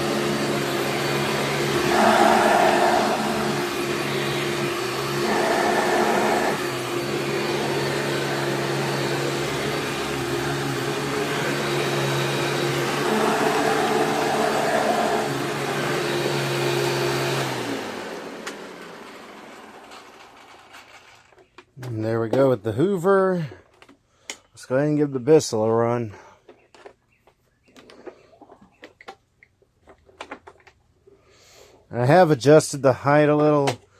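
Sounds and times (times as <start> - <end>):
vacuum cleaner running: 0.0 - 21.0
vacuum motor winding down: 0.0 - 21.0.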